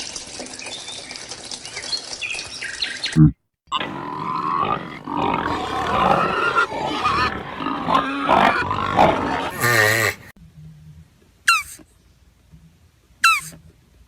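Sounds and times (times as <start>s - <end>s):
animals grunting and squealing: 3.1s - 10.3s, 11.5s - 11.8s, 13.2s - 13.6s
long wavering animal call: 11.5s - 11.8s, 13.2s - 13.6s.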